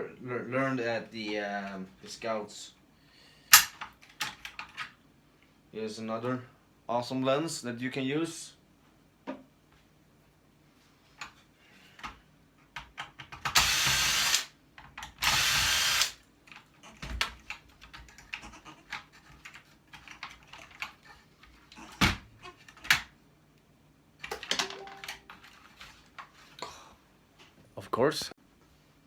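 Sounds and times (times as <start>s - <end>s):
power drill bursts: 13.5s - 14.5s, 15.2s - 16.2s
parts clicking and clattering: 24.2s - 26.3s.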